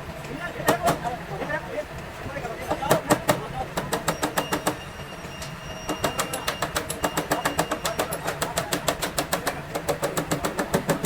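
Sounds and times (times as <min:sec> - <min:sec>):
rapid even knocking: 0:00.6 - 0:01.1, 0:02.7 - 0:04.8, 0:05.9 - 0:11.0.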